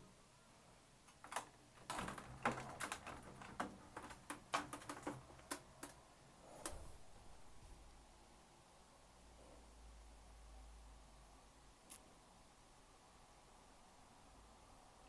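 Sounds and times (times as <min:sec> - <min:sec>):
plastic parts clicking and tapping: 0:01.1 - 0:06.0.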